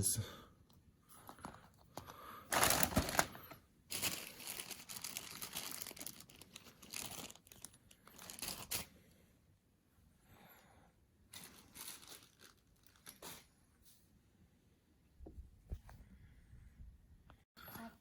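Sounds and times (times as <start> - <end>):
plastic packaging crinkling: 2.5 - 8.9, 11.3 - 13.2.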